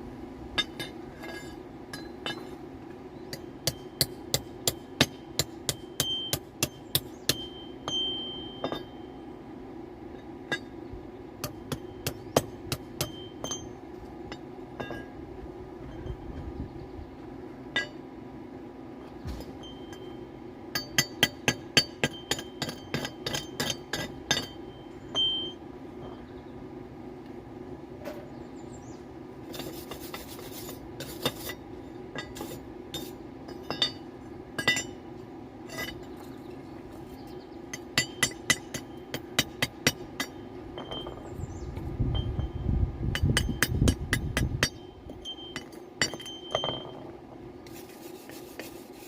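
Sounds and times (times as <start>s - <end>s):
steady low hum: 0.0s - 49.0s
metal taps on steel: 37.7s - 41.3s.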